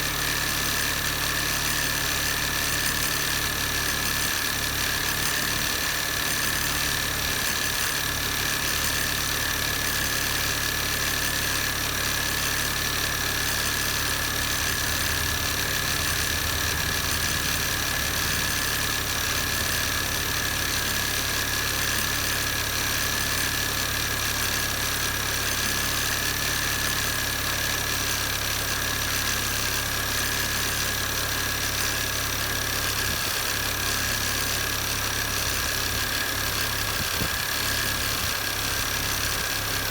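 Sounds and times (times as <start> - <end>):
car engine idling: 2.4 - 25.5
high-pitched engine whine: 11.2 - 22.3.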